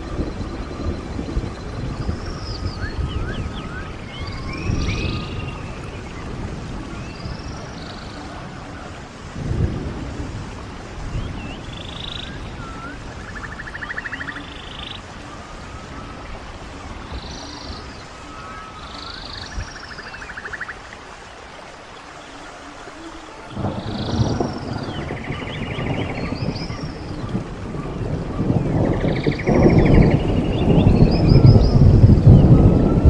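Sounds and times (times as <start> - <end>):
stream water running: 0.0 - 33.0
birds calling: 11.1 - 32.5.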